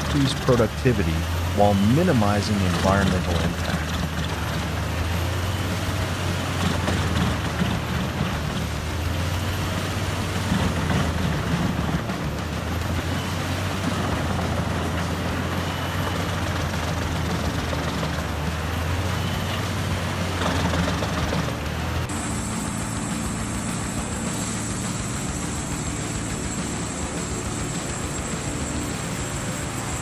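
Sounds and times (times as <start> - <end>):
wood chipper running: 0.0 - 30.0
thin high whine: 22.1 - 30.0.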